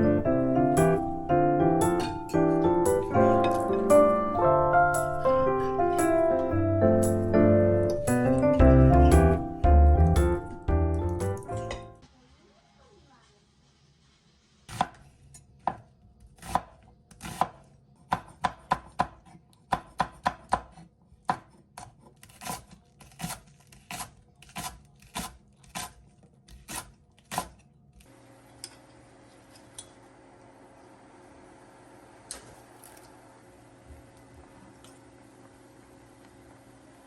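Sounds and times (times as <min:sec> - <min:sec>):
knife chopping on cutting board: 0:14.7 - 0:15.0, 0:15.6 - 0:27.6.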